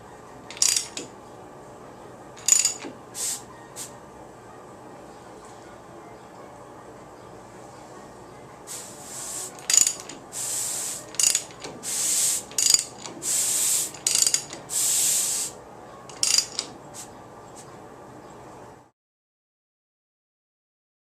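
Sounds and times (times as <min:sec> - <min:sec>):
socket ratchet clicking: 0:00.5 - 0:01.1, 0:02.4 - 0:02.9, 0:09.6 - 0:10.2, 0:11.1 - 0:11.7, 0:12.5 - 0:13.2, 0:13.8 - 0:14.6, 0:16.1 - 0:16.7.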